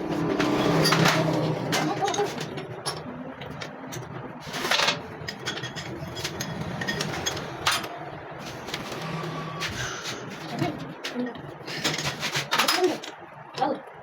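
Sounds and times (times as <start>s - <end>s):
low workshop hum: 0.0s - 14.0s
metal tools clinking: 0.1s - 8.0s.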